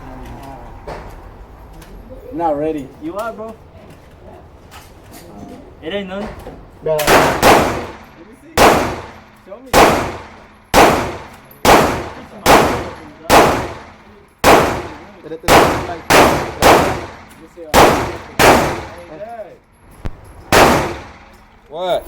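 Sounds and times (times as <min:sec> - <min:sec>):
shotgun shots: 0:07.0 - 0:19.2, 0:20.1 - 0:21.5.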